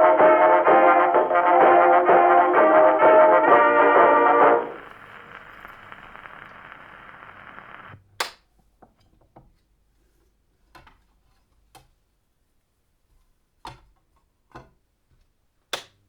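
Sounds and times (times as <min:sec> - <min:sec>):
record surface noise: 0:02.5 - 0:08.0.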